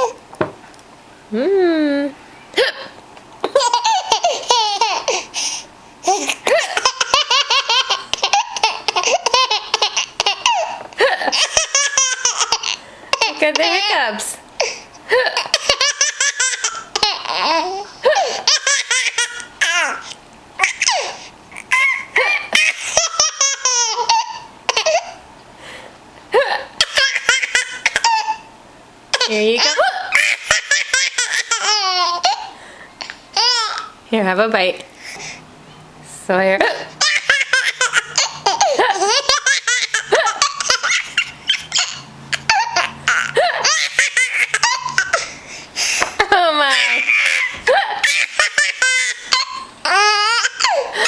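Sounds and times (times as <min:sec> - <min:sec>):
baby laughing: 0:00.0 - 0:00.2, 0:03.4 - 0:05.4, 0:06.0 - 0:25.2, 0:26.4 - 0:28.5, 0:29.1 - 0:34.0, 0:37.0 - 0:45.4, 0:46.7 - 0:51.0
woman hiccuping: 0:02.6 - 0:03.0.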